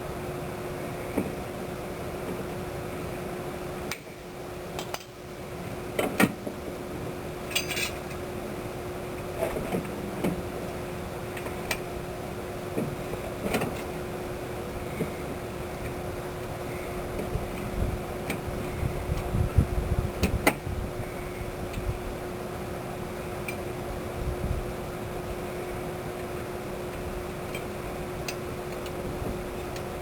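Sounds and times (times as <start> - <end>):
steady hum: 0.0 - 30.0
metal tools clinking: 7.5 - 8.1.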